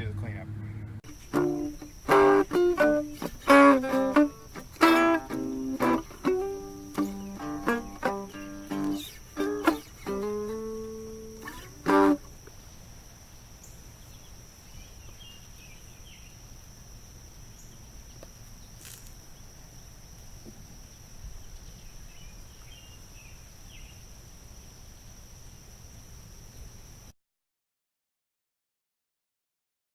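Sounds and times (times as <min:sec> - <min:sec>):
plucked guitar chord: 0:01.1 - 0:12.3
faint bird chirps: 0:06.8 - 0:11.7, 0:12.6 - 0:16.4, 0:20.4 - 0:24.1.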